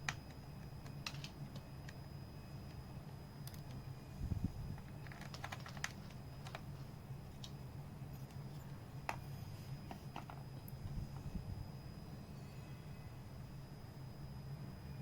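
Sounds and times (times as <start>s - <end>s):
faint high whine: 0.0s - 15.0s
steady low hum: 0.0s - 15.0s.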